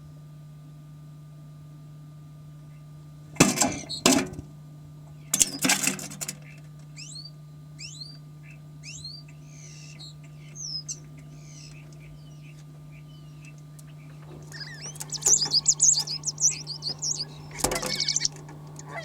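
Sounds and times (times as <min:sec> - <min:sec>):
starlings chirping: 0:03.7 - 0:04.1, 0:06.4 - 0:19.0.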